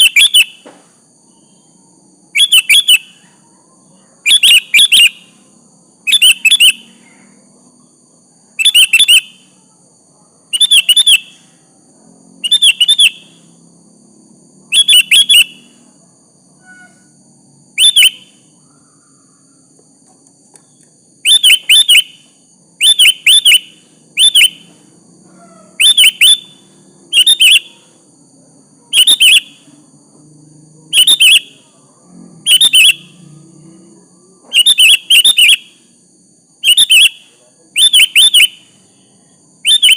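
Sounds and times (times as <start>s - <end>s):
bird chirping calls: 0.0s - 0.7s, 2.4s - 5.4s, 6.0s - 7.4s, 8.6s - 9.6s, 10.5s - 11.5s, 12.4s - 13.6s, 14.7s - 15.8s, 17.8s - 19.7s, 20.6s - 28.0s, 28.9s - 29.8s, 30.9s - 31.7s, 32.5s - 33.3s, 34.5s - 35.9s, 36.6s - 38.8s, 39.6s - 39.9s
faint high whine: 0.0s - 39.9s.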